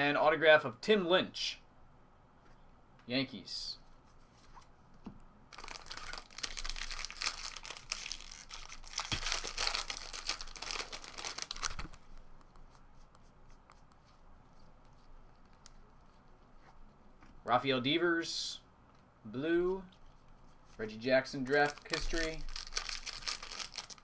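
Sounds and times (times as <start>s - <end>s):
foil wrapper tearing and crinkling: 5.5s - 12.0s, 21.5s - 24.0s.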